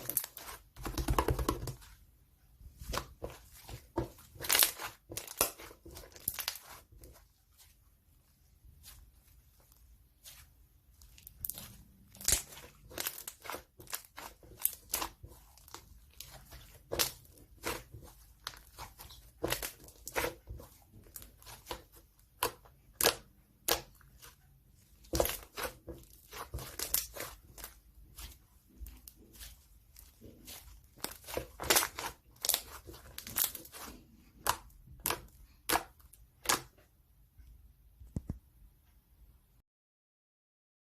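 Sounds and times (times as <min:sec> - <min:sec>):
crinkling and crunching by hand: 0:00.0 - 0:36.9.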